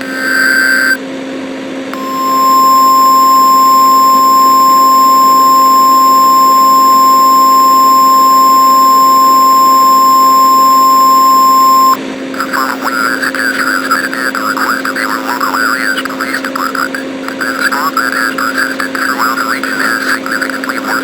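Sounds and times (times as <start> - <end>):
buzzy alert data bursts: 0.0 - 1.0.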